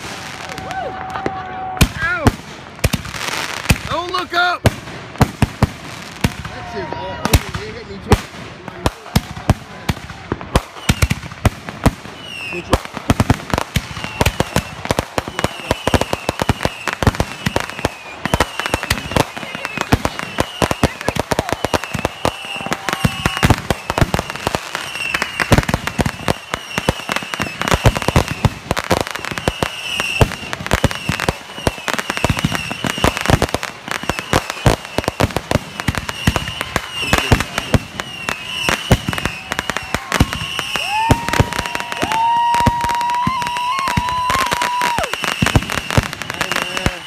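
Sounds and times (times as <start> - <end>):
fireworks bangs and crackles: 0.0 - 47.0
high whistle: 35.9 - 47.0.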